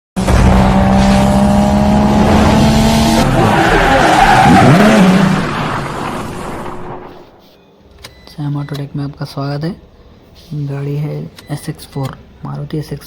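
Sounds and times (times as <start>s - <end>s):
car engine: 0.2s - 7.4s.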